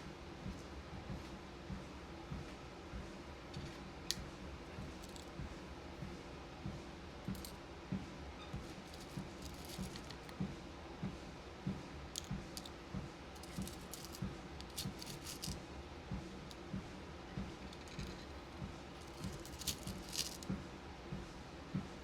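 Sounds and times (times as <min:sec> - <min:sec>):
plastic beads clicking and rattling: 0:05.0 - 0:05.4, 0:07.3 - 0:07.5, 0:08.9 - 0:10.3, 0:12.2 - 0:12.7, 0:13.4 - 0:15.6, 0:19.0 - 0:20.5.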